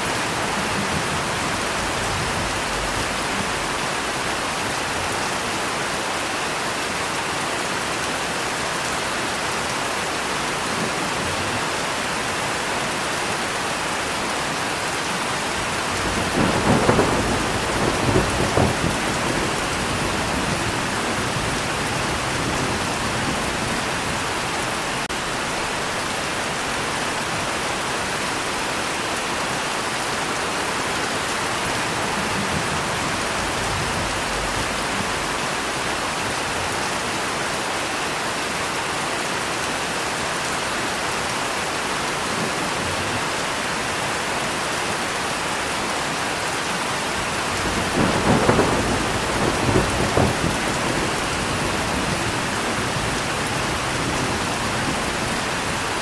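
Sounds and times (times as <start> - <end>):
thunder rumbling: 0.0 - 4.7, 15.5 - 25.4, 31.2 - 35.9, 47.2 - 56.0
heavy rain falling: 0.0 - 56.0.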